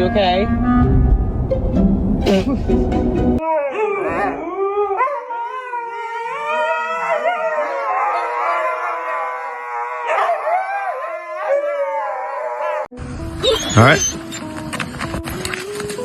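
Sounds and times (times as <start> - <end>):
dog howling: 3.4 - 14.2.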